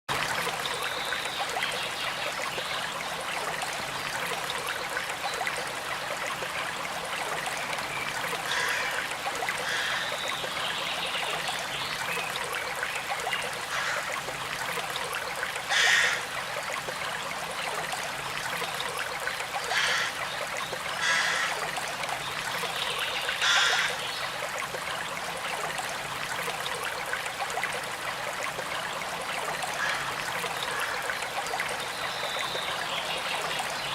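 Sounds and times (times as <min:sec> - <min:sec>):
river water flowing: 0:00.1 - 0:33.9.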